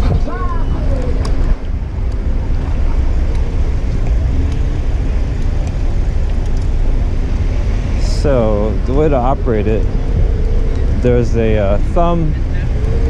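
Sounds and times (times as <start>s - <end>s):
road and wind rumble: 0.0s - 13.0s.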